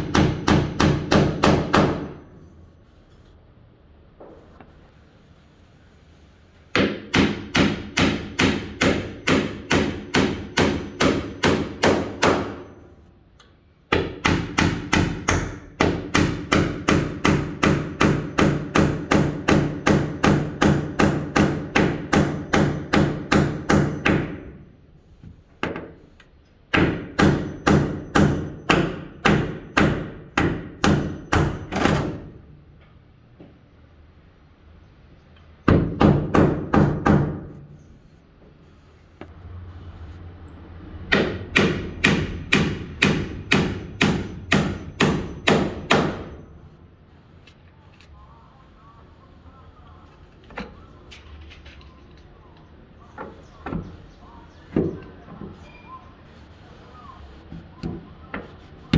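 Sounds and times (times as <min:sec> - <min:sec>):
hammer driving nails into wood: 0:06.7 - 0:12.7, 0:13.9 - 0:24.5, 0:26.7 - 0:32.3, 0:41.1 - 0:46.4.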